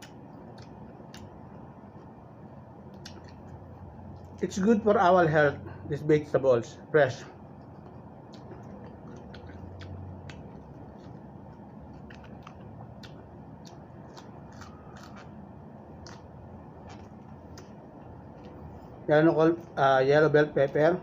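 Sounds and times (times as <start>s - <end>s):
person chewing raw vegetables: 0.0s - 2.2s, 2.8s - 4.4s, 7.4s - 19.0s
steady low background hum: 0.0s - 21.0s.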